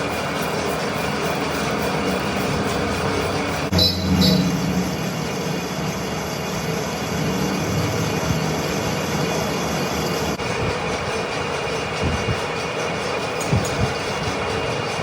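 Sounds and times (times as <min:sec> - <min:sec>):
metal lathe running: 0:00.0 - 0:15.0.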